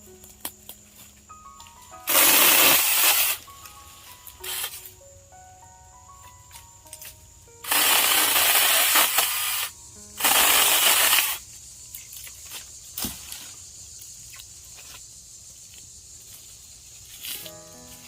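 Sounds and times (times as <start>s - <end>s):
mini chainsaw cutting branch: 2.1s - 3.4s, 4.4s - 4.8s, 7.6s - 11.4s.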